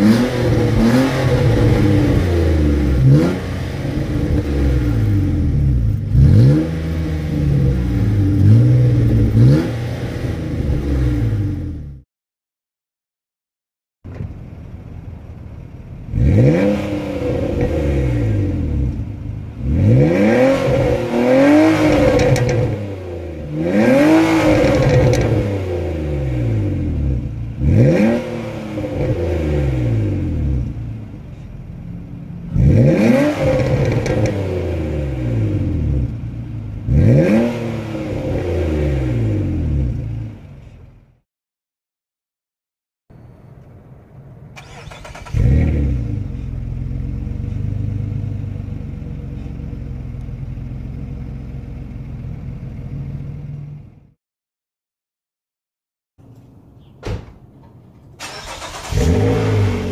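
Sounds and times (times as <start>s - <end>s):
car engine revving from idle: 0.0s - 11.8s, 16.0s - 31.4s, 32.5s - 40.4s, 44.6s - 53.6s, 58.2s - 59.9s.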